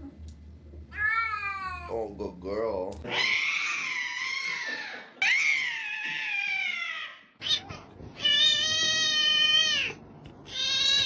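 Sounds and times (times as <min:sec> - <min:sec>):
cat meowing: 0:05.2 - 0:11.0.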